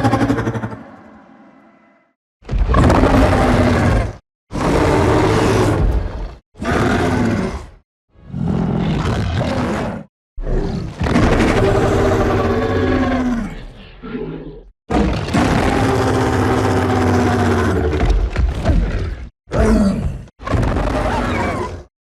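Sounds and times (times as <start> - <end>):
loud growling roars: 2.6 - 18.0.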